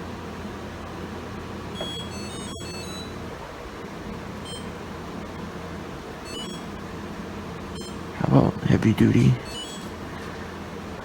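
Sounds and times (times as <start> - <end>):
air conditioner hum: 0.0 - 11.0
short electronic beeps: 6.3 - 6.7, 7.8 - 8.1.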